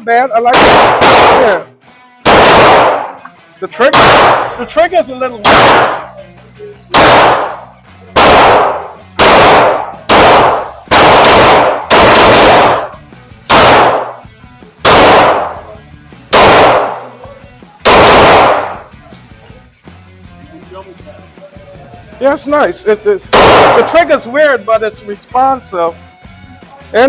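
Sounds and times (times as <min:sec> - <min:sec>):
pistol shots with echo: 0:00.5 - 0:03.2, 0:03.8 - 0:04.8, 0:05.4 - 0:06.2, 0:06.9 - 0:17.2, 0:17.8 - 0:18.9, 0:23.3 - 0:24.2.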